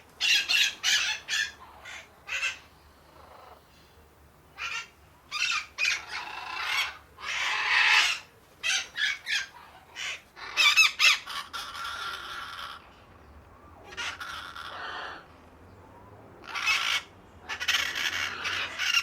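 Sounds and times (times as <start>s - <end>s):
parakeets squawking: 0.2s - 3.6s, 4.6s - 12.8s, 13.9s - 15.2s, 16.4s - 19.0s.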